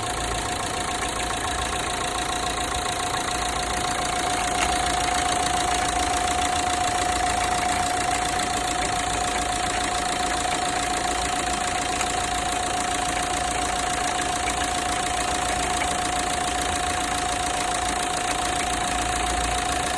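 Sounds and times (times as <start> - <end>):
diesel engine idling: 0.0 - 19.9.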